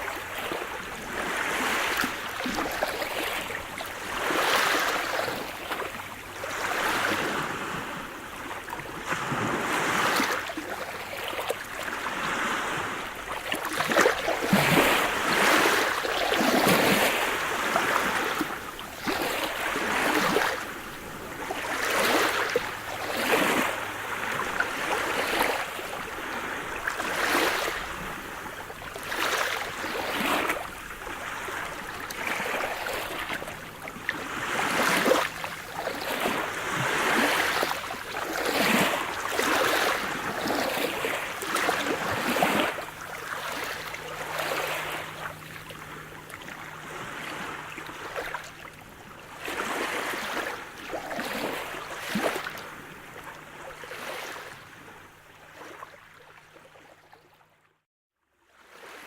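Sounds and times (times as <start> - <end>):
waves breaking on shore: 0.0 - 57.4, 58.6 - 59.0.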